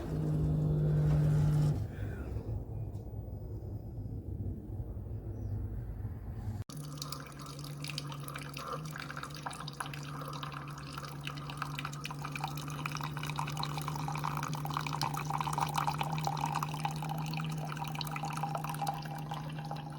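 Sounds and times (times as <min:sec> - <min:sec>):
coffee maker pump humming: 0:00.0 - 0:02.2, 0:06.7 - 0:19.9
coffee dripping into a cup: 0:06.7 - 0:19.9.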